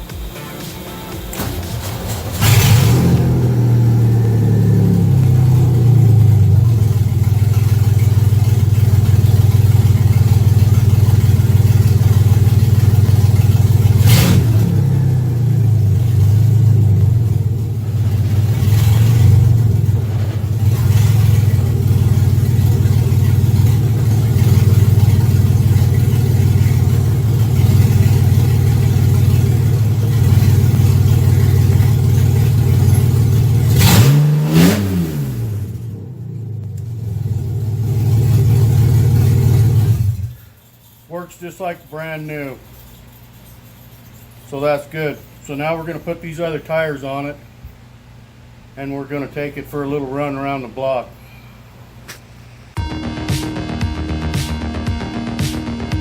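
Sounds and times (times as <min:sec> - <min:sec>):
engine running near idle: 0:00.0 - 0:41.0
gear shift clunks: 0:01.1 - 0:14.8.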